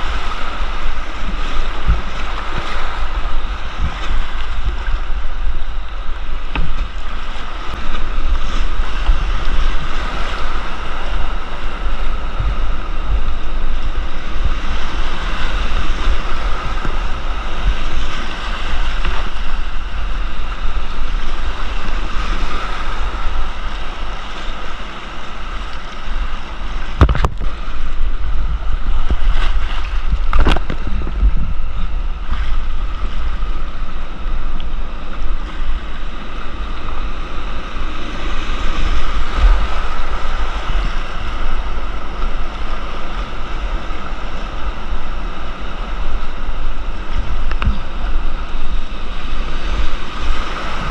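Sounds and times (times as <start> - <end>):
whitewater rushing: 0.0 - 50.9
wind buffeting microphone: 0.0 - 50.9
sharp knocks: 27.0 - 27.4.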